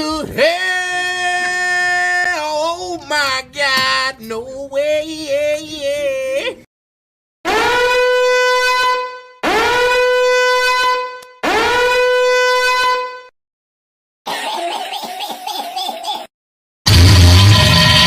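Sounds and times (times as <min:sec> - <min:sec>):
horn blasts: 0:07.5 - 0:13.3.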